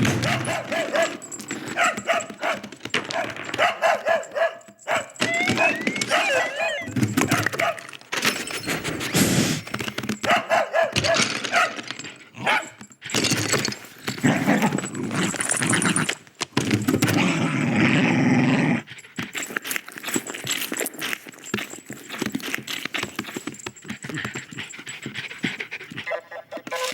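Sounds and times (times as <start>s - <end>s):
scuffling: 0.0s - 8.1s
dog barking and yipping: 0.0s - 9.1s, 10.1s - 13.6s, 14.2s - 16.2s, 21.0s - 26.9s.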